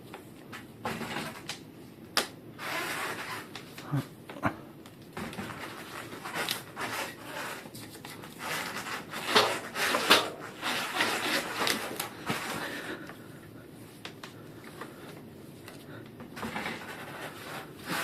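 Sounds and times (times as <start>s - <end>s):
rubbing and scraping: 5.2s - 13.0s, 14.8s - 18.0s.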